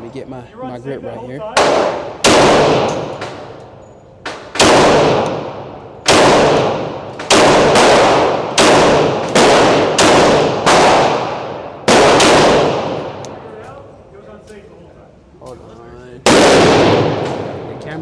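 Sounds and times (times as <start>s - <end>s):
pistol shots echoing: 1.6s - 13.4s, 16.2s - 17.8s.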